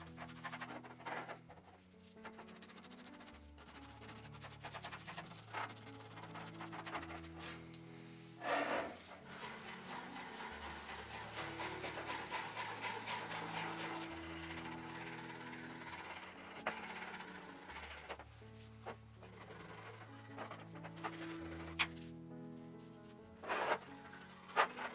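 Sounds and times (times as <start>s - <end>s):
abrasive rubbing strokes: 0.0s - 22.1s, 23.4s - 24.9s
background music low notes: 0.0s - 24.9s.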